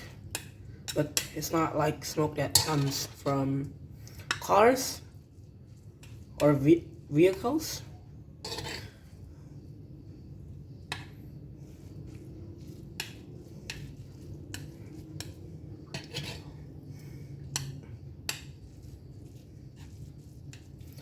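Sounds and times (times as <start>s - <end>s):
utensil clinking against a bowl: 0.0s - 5.0s, 12.1s - 16.6s
steady low hum: 0.0s - 21.0s.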